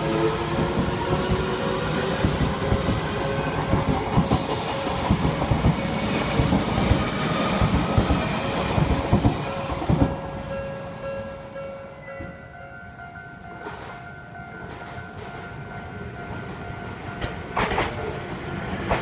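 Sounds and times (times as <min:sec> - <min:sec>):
train wheels clattering over rails: 0:00.1 - 0:10.4, 0:16.3 - 0:18.2.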